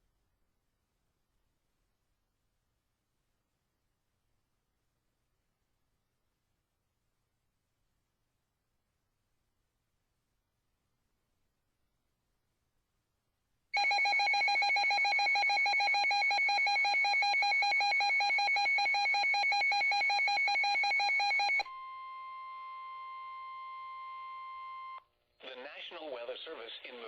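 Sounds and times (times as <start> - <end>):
rapid electronic alarm beeping: 13.8 - 21.6.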